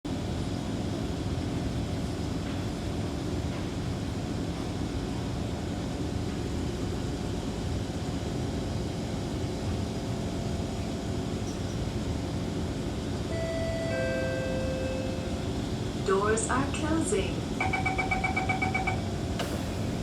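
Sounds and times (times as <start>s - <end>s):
train air-conditioning hum: 0.1s - 20.0s
two-note descending door chime: 13.3s - 15.5s.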